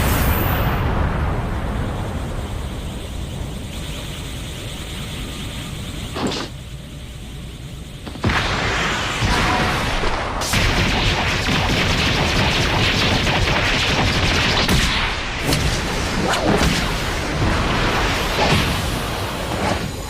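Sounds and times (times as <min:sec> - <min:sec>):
explosion-like rushing noise: 0:00.0 - 0:03.7, 0:08.1 - 0:12.3
sharp cracking impacts: 0:08.0 - 0:20.0.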